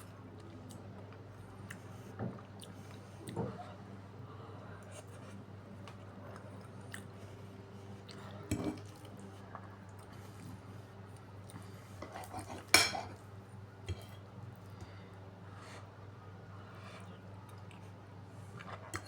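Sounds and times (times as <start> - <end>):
cutlery clinking against dish: 12.0 - 13.2.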